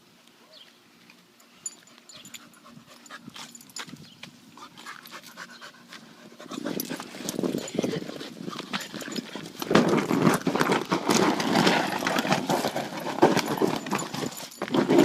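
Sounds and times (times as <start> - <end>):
puppy panting: 2.1 - 3.8, 4.6 - 9.7
scratching and rustling: 4.7 - 15.0.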